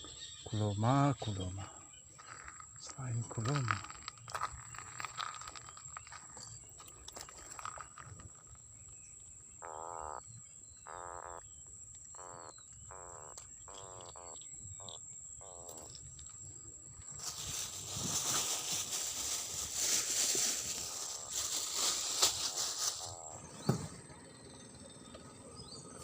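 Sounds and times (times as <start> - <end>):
animal raspy croaking calls: 0.0 - 8.6, 9.2 - 16.0, 19.2 - 24.2
faint chirps: 0.0 - 26.0
steady high-pitched whine: 22.8 - 26.0.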